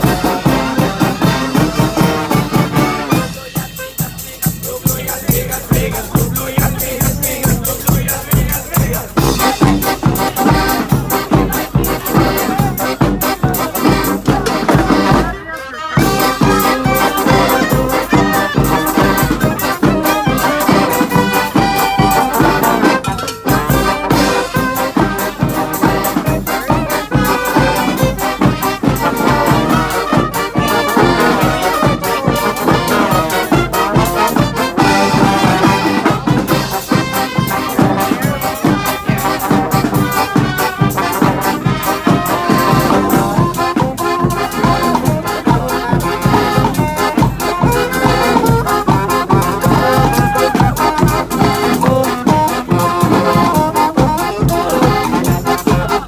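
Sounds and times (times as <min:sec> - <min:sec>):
brass street band playing: 0:00.0 - 0:56.0
steady drum beat: 0:00.0 - 0:56.0.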